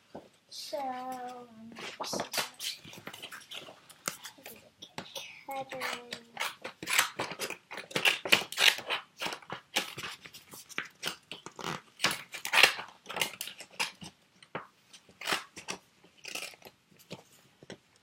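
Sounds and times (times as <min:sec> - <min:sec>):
scissors cutting paper: 0:01.8 - 0:14.2, 0:15.0 - 0:17.2.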